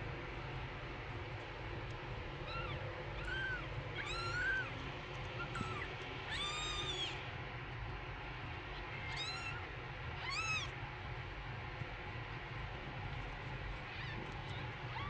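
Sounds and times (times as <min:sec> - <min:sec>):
kittens meowing: 0:02.4 - 0:07.3, 0:08.8 - 0:10.7, 0:13.8 - 0:15.0.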